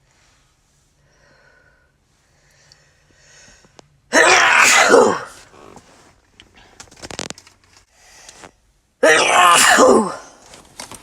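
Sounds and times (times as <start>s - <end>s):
person sneezing: 4.1s - 5.5s, 9.0s - 10.4s.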